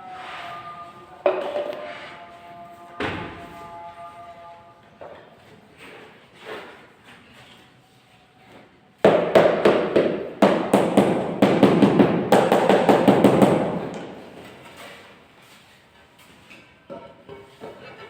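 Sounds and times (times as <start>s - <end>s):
rapid sharp knocks: 9.1s - 14.0s.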